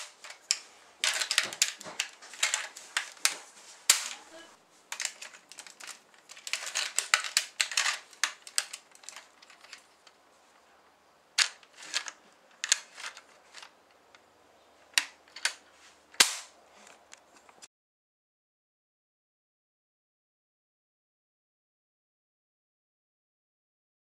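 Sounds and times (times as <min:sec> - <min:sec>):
plastic toy rifle clicking: 0:00.0 - 0:04.2, 0:04.9 - 0:10.2, 0:11.4 - 0:13.8, 0:14.9 - 0:15.6.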